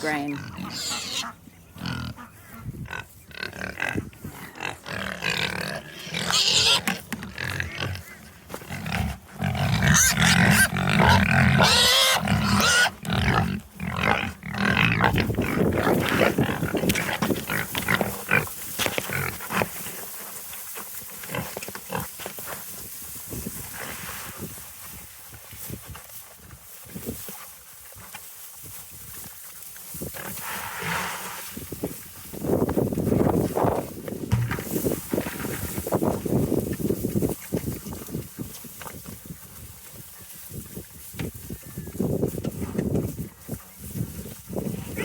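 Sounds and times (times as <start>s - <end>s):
pigs grunting and calling: 0.0s - 19.8s.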